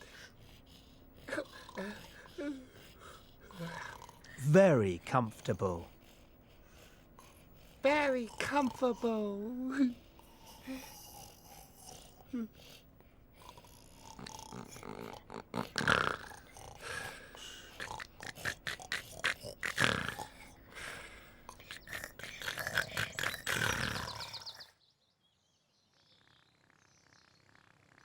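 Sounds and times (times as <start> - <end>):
snoring: 0.0 - 4.4, 7.2 - 24.7.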